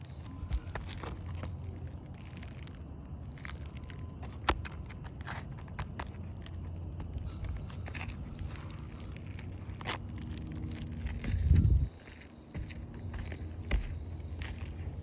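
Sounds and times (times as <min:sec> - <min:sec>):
crunching on roof shingles: 0:00.0 - 0:15.0
low rumble: 0:06.4 - 0:15.0.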